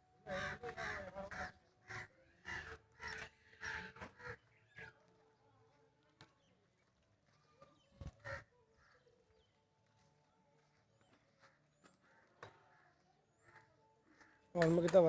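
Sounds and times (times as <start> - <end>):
crows cawing: 0.2 - 4.9, 8.1 - 9.1, 11.4 - 14.8.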